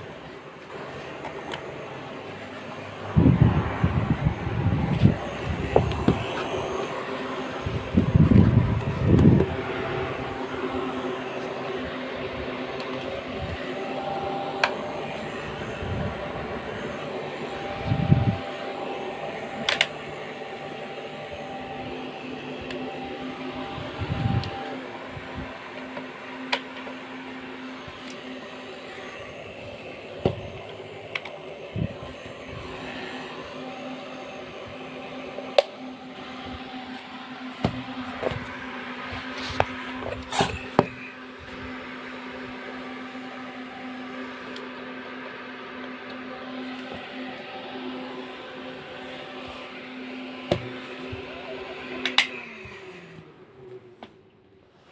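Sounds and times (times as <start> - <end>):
electric fans whirring: 0.0 - 54.9.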